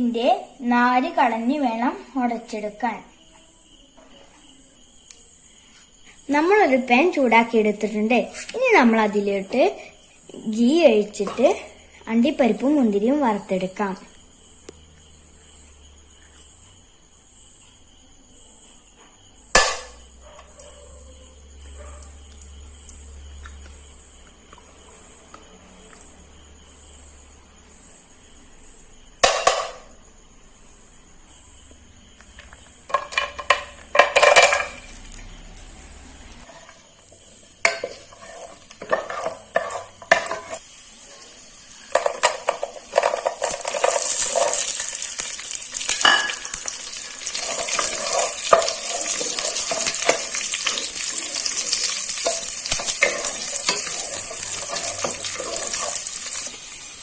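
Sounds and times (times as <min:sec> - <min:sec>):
nuts frying with sizzle: 0:31.6 - 0:57.0
spoon clinking against pan: 0:46.0 - 0:46.6.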